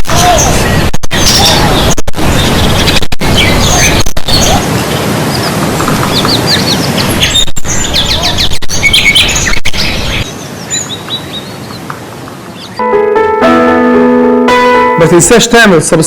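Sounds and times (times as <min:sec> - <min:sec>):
small birds chirping: 0:00.3 - 0:12.8.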